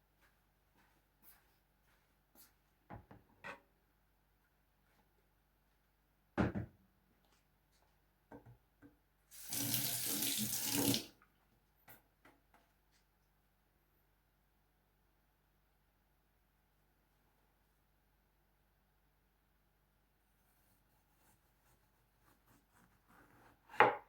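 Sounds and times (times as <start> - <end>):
tap running into sink: 9.4 - 11.1.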